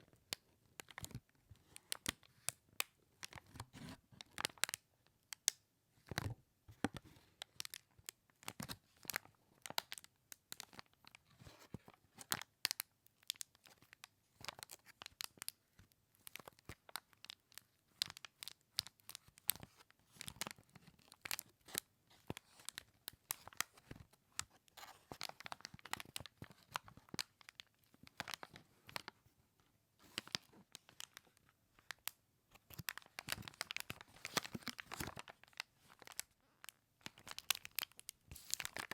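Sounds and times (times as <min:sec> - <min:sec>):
plastic bag crinkling: 0:32.6 - 0:38.9.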